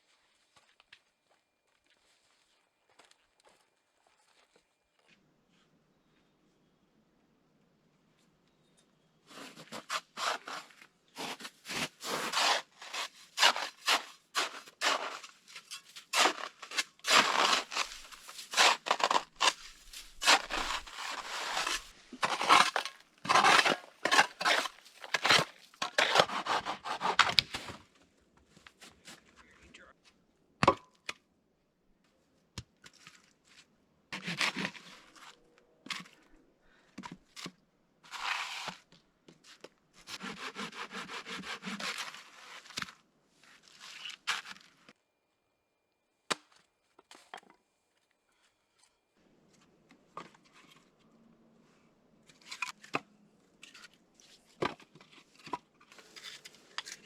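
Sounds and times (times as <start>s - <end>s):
hand saw cutting wood: 9.9s - 15.3s, 16.1s - 27.4s, 40.1s - 42.3s.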